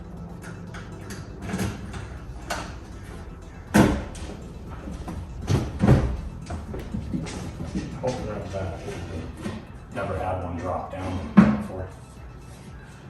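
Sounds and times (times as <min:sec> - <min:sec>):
pinball machine knocks and thumps: 0:03.7 - 0:04.3.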